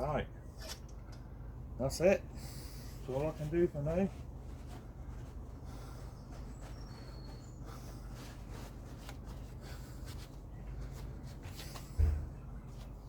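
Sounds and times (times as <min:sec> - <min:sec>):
low steady rumble: 0:00.0 - 0:13.0
hands handling things: 0:03.2 - 0:13.0
dull thump: 0:11.9 - 0:12.5.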